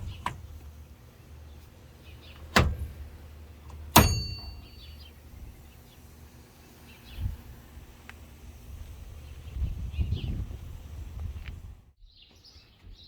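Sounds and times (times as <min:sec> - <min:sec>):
metallic clank ringing: 0:03.9 - 0:05.1.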